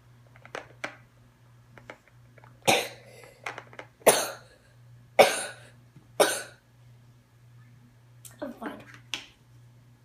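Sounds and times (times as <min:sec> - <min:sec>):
child coughing: 0:02.7 - 0:03.1, 0:04.1 - 0:04.4, 0:05.2 - 0:05.6, 0:06.2 - 0:06.6.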